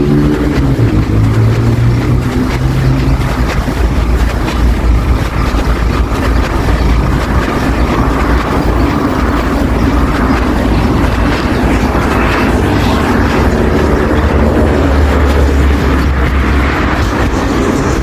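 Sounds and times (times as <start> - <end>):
motor vehicles rumbling past: 0.0 - 18.0
pitched engine drone: 0.0 - 18.0.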